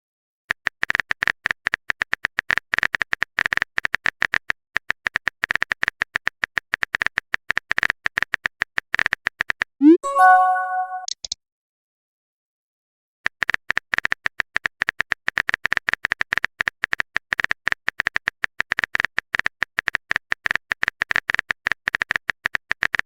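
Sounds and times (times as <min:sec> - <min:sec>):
phone keyboard typing clicks: 0:00.5 - 0:11.4
message sent swoop and chime: 0:09.8 - 0:11.1.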